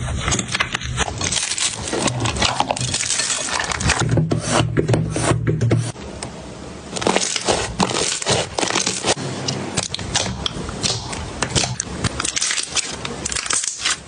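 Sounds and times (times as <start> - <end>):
brittle crunching and crackling: 0.0 - 4.0, 6.9 - 9.2, 9.8 - 14.0.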